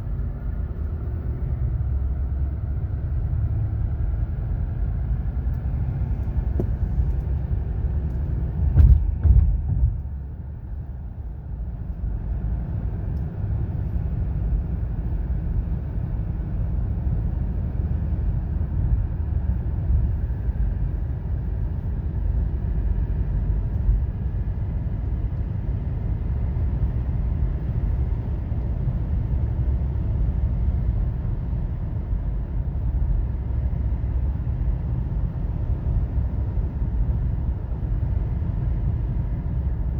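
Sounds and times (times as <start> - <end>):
road and tyre rumble in car: 0.0 - 39.9
car bump: 6.4 - 7.0, 8.6 - 10.2.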